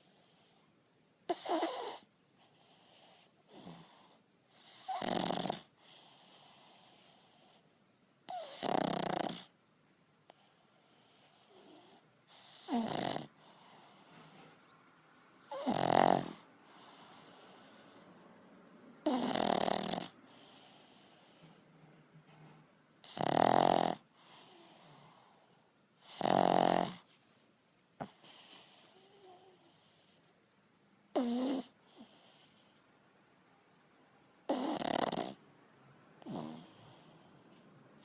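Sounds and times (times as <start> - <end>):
dog snoring: 0.0 - 0.6, 1.3 - 7.7, 8.3 - 9.6, 10.3 - 14.8, 15.4 - 21.6, 23.0 - 27.1, 28.0 - 30.4, 31.1 - 32.8, 34.5 - 35.4, 36.2 - 38.0
quiet dog breathing: 0.0 - 9.6, 10.2 - 14.8, 15.4 - 30.5, 31.2 - 33.0, 36.2 - 38.0.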